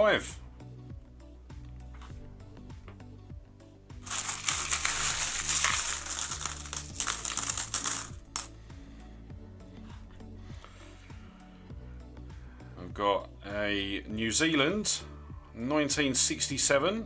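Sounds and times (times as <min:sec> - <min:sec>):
soft background music: 0:00.0 - 0:17.0
coins clinking and jingling: 0:04.0 - 0:08.6.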